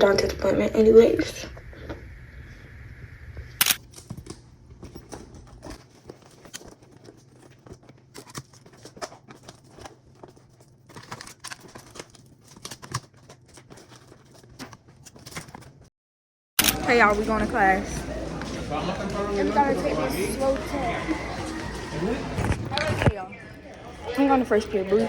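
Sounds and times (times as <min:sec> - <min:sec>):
rustling of handled objects: 0:03.6 - 0:15.9.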